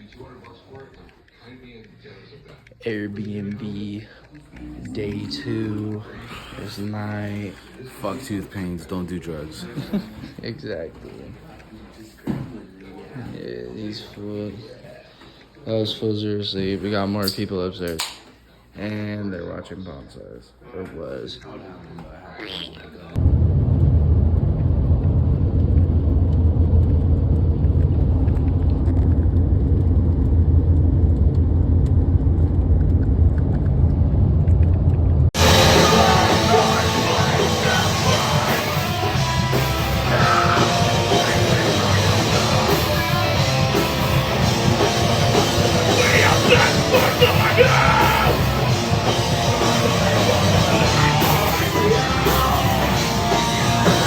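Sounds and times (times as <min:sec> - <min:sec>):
heavy rock music: 0:35.4 - 0:54.0.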